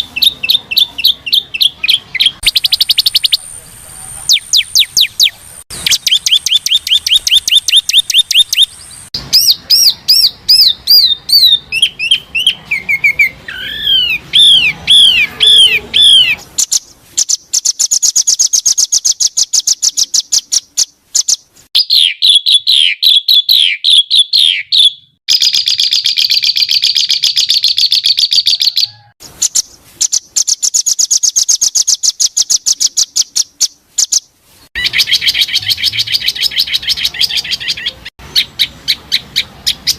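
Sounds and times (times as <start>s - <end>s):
songbird chirps and trills: 0.0s - 39.9s.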